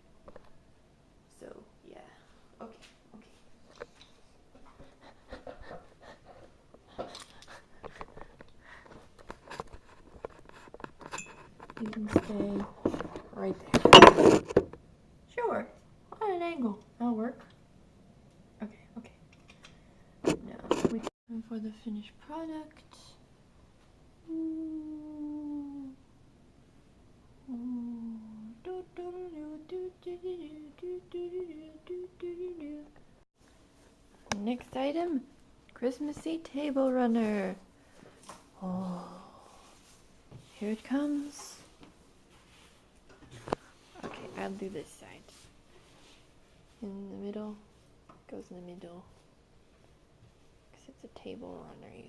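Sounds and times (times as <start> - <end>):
woman humming: 24.2 - 26.1, 27.4 - 32.9, 38.6 - 39.5.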